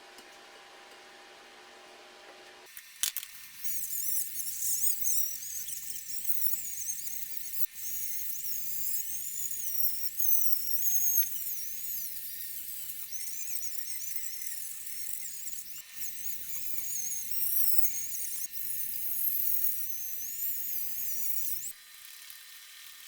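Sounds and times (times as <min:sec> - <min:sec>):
sharp click: 0:02.7 - 0:03.3.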